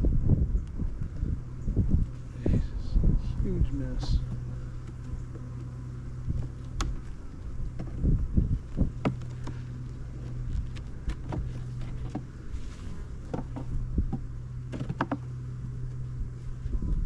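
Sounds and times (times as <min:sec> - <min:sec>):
bees humming: 0:00.0 - 0:17.0
hive frames clicking and knocking: 0:03.6 - 0:15.6.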